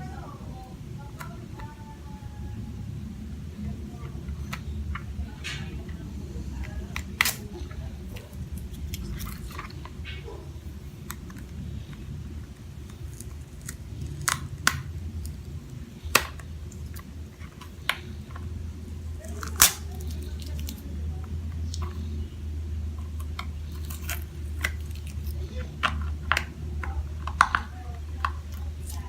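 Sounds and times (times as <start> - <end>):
steady low hum: 0.0 - 29.0
toy and packaging clicks and taps: 4.0 - 10.0, 11.0 - 18.5, 23.2 - 29.0.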